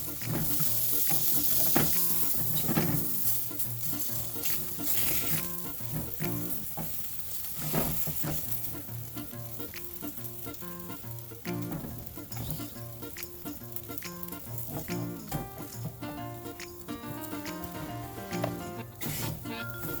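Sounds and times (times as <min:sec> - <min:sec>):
food sizzling in a pan: 0:00.0 - 0:20.0
background music: 0:08.4 - 0:20.0
utensil clicks: 0:08.5 - 0:17.8.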